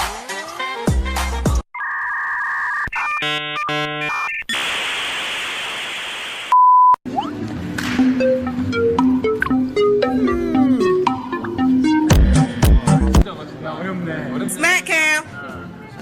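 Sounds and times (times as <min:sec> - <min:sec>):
stacked electronic tones: 0:01.8 - 0:04.5, 0:08.0 - 0:13.3
static hiss: 0:04.5 - 0:06.5
light music with plucked notes: 0:07.1 - 0:13.3.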